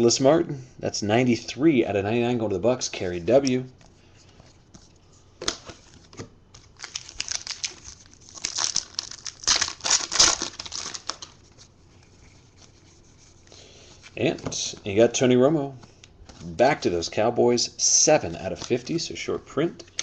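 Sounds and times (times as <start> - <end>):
cards and wrapping rustling: 3.3 - 17.2, 17.9 - 20.0.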